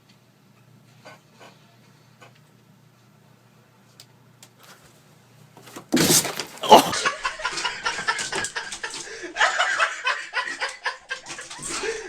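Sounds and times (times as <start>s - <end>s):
laughter: 6.9s - 12.0s.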